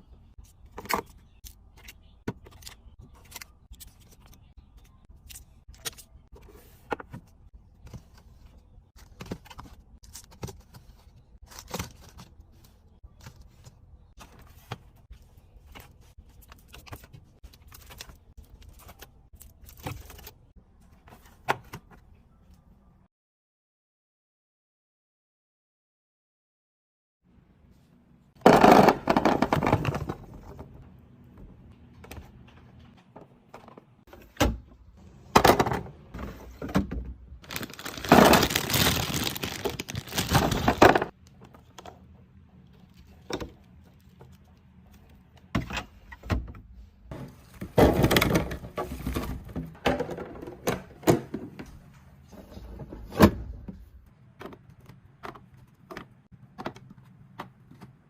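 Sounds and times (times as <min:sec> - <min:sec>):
rustling or pouring: 0:37.4 - 0:41.0.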